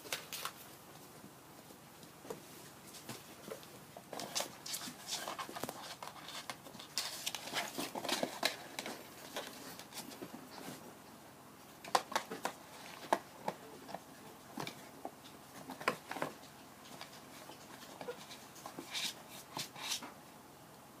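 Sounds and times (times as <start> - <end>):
rustling scrapes: 4.1 - 10.9, 15.6 - 20.1.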